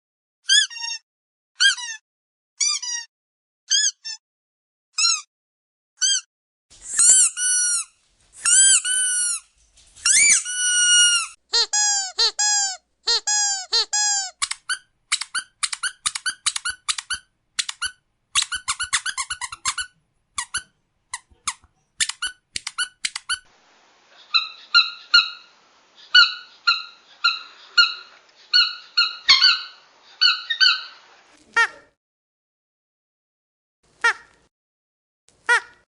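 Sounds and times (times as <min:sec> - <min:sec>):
squeaky dog toy squeaking: 0:00.5 - 0:01.0, 0:01.6 - 0:02.0, 0:02.6 - 0:03.1, 0:03.7 - 0:04.2, 0:05.0 - 0:05.3, 0:06.0 - 0:06.3, 0:06.9 - 0:23.5, 0:26.1 - 0:31.0
squeaker in quick pairs: 0:05.0 - 0:05.3, 0:06.0 - 0:11.4, 0:13.4 - 0:23.5
faint hiss: 0:23.5 - 0:24.3.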